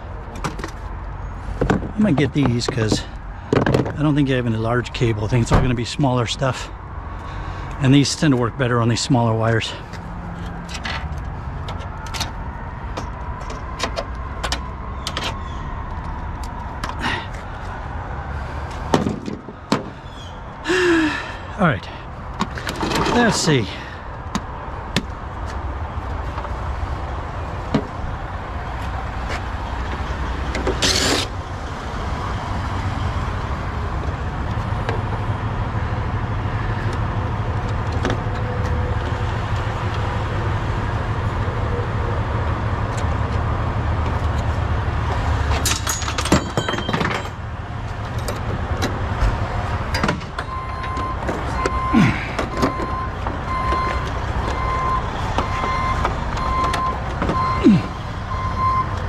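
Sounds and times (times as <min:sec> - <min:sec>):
heavy vehicle engine rumbling: 0:00.0 - 0:59.0
metallic clatters: 0:45.5 - 0:47.5
reversing alarm beeping: 0:50.4 - 0:59.0.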